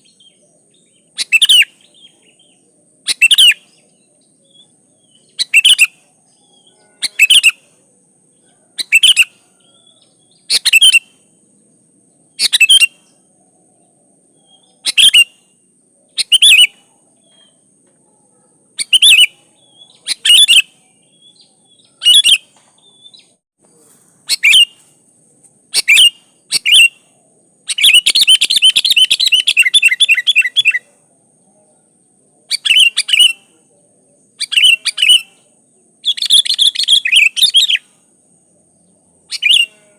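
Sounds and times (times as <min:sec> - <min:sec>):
bird calling: 0:00.0 - 0:07.8, 0:08.4 - 0:11.3, 0:12.3 - 0:13.3, 0:14.4 - 0:17.6, 0:18.8 - 0:23.4, 0:24.2 - 0:25.0, 0:25.7 - 0:31.0, 0:39.2 - 0:39.9
bird rapid chattering: 0:01.2 - 0:01.9, 0:03.0 - 0:03.7, 0:25.7 - 0:27.0, 0:27.7 - 0:30.8.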